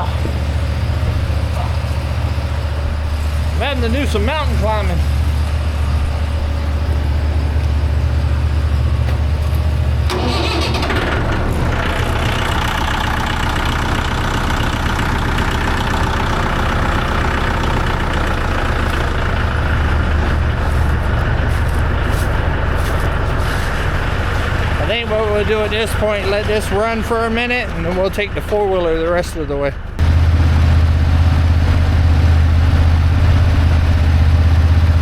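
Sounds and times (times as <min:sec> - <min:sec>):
low engine rumble: 0:00.0 - 0:35.0
engine starting and idling: 0:08.2 - 0:28.5.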